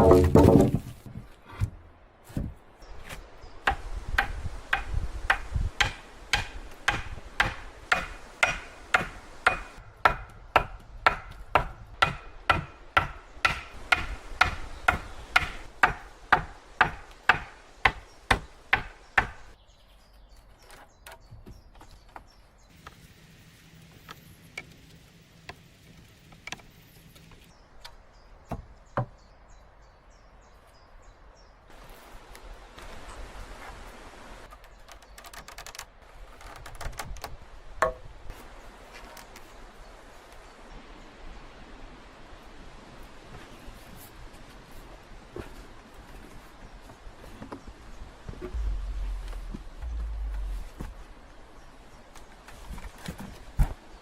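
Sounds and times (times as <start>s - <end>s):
wood chopping: 0.0s - 2.5s, 3.1s - 19.4s, 37.8s - 38.1s.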